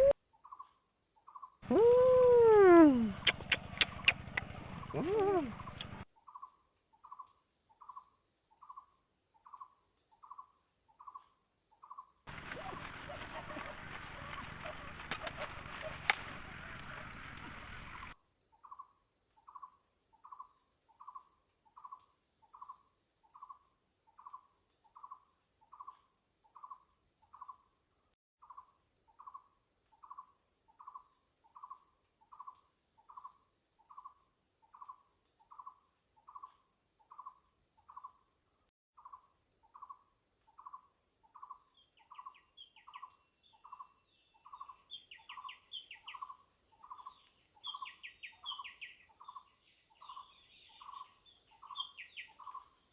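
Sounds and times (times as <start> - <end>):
short repeating insect call: 0.0 - 52.9
bird chirps: 1.7 - 7.2, 41.4 - 52.7.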